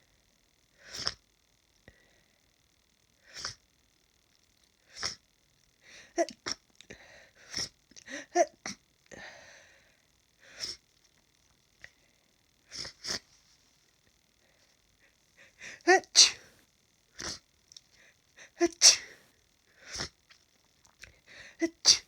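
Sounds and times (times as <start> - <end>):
nasal sniffs: 3.3 - 3.6, 12.7 - 13.2
person sneezing: 15.6 - 16.5, 18.5 - 19.2, 21.6 - 22.0.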